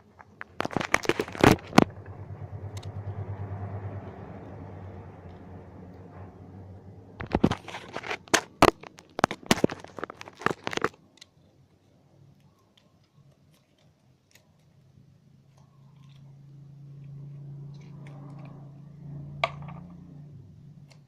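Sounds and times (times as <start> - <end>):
slime crackling and popping: 7.3 - 11.4.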